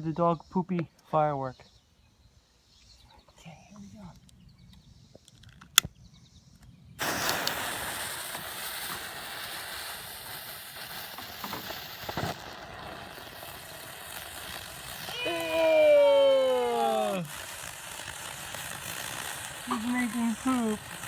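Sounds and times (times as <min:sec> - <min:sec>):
small crackles: 0:03.8 - 0:21.0
firework fizzing hiss: 0:07.0 - 0:21.0.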